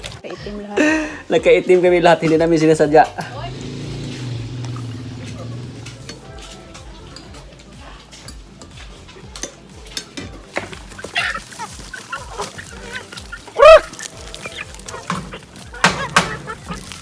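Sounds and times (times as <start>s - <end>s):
chickens clucking: 2.2s - 17.0s.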